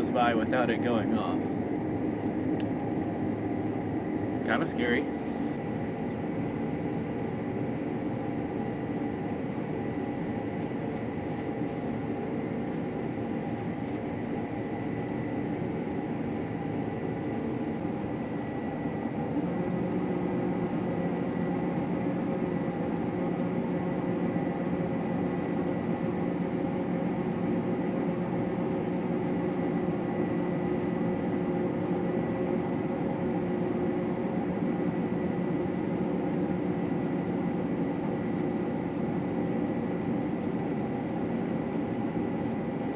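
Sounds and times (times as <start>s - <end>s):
combine harvester drone: 0.0s - 42.9s.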